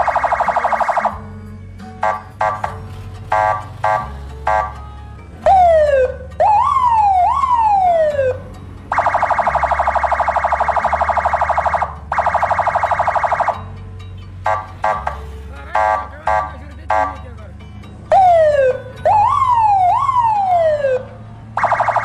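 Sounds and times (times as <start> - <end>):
siren falling sweep: 0.0 - 1.2, 5.4 - 13.6, 18.1 - 22.0
buzzing siren horn blasts: 0.0 - 1.3, 2.0 - 13.8, 14.4 - 17.3, 18.1 - 22.0
police siren wailing: 0.0 - 1.3, 2.0 - 4.8, 5.4 - 13.8, 14.4 - 17.2, 18.1 - 22.0.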